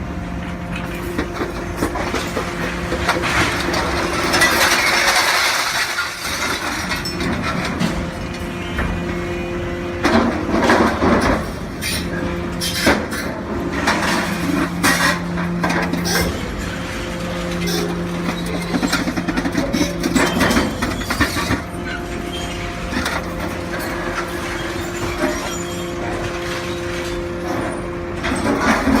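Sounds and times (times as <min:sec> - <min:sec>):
hydraulic machine hum: 0:00.0 - 0:29.0
sheet metal crushing clanks: 0:01.3 - 0:08.5.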